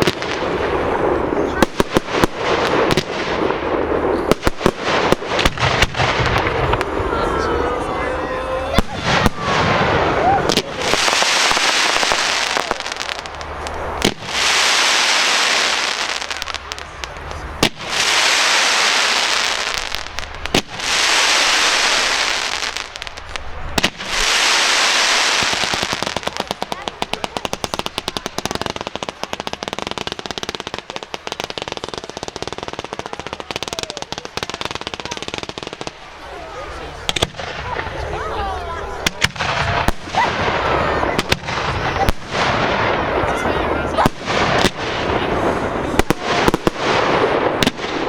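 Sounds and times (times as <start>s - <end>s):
fireworks bangs: 0.0s - 48.0s
fireworks hissing crackle: 0.0s - 48.0s
rapid crackling pops: 8.8s - 36.3s, 37.0s - 38.1s.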